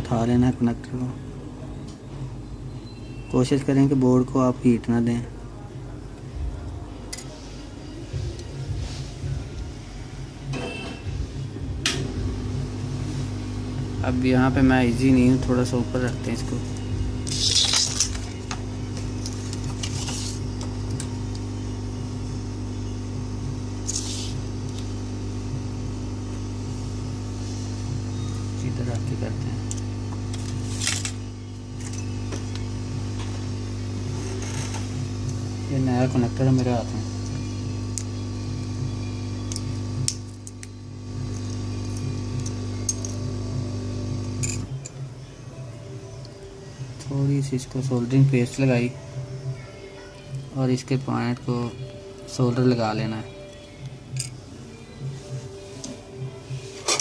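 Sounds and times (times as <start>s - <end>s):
hot-air station blowing: 7.4s - 44.7s
brief hissing: 23.8s - 24.4s.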